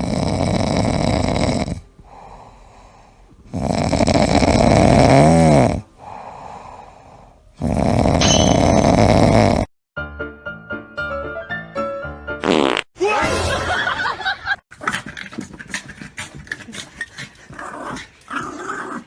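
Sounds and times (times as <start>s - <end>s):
pet snoring loudly: 0.0s - 2.4s, 3.5s - 6.4s, 7.5s - 9.7s
quiet breaths: 0.0s - 4.2s, 5.8s - 7.6s.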